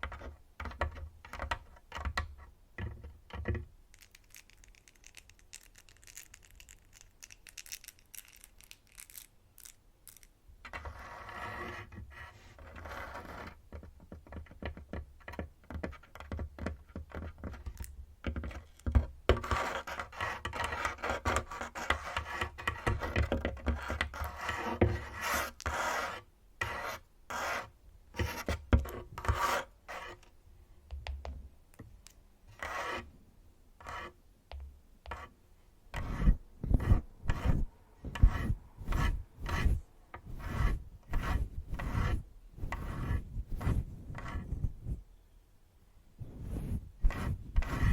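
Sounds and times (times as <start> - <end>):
fingernails scraping on table: 10.7 - 13.6, 36.0 - 44.8, 46.3 - 47.9.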